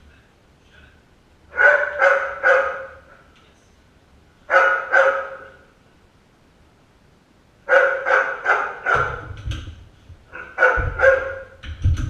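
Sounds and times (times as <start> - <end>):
dog barking: 1.5 - 3.2, 4.5 - 5.7, 7.7 - 9.4, 10.3 - 11.6.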